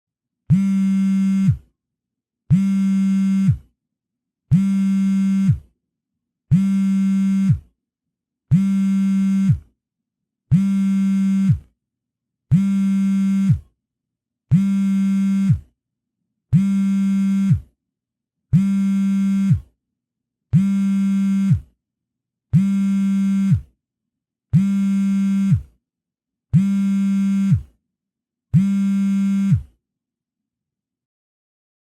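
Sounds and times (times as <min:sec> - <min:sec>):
mobile phone vibrating: 0:00.5 - 0:01.7, 0:02.5 - 0:03.7, 0:04.5 - 0:05.7, 0:06.5 - 0:07.7, 0:08.5 - 0:09.7, 0:10.5 - 0:11.7, 0:12.5 - 0:13.7, 0:14.5 - 0:15.7, 0:16.5 - 0:17.8, 0:18.5 - 0:19.8, 0:20.5 - 0:21.8, 0:22.5 - 0:23.7, 0:24.5 - 0:25.8, 0:26.5 - 0:27.8, 0:28.5 - 0:29.8.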